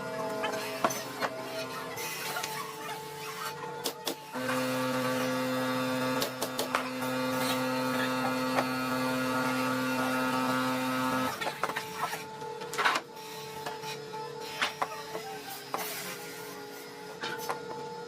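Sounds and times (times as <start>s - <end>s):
power tool motor humming: 4.2s - 11.6s.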